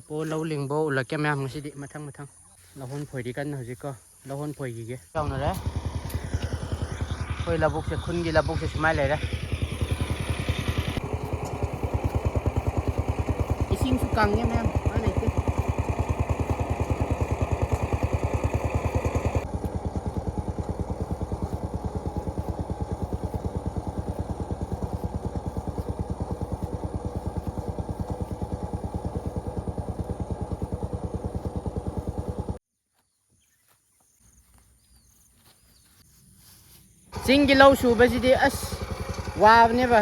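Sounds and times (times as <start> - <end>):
small engine running: 5.2 - 32.6, 37.1 - 40.0.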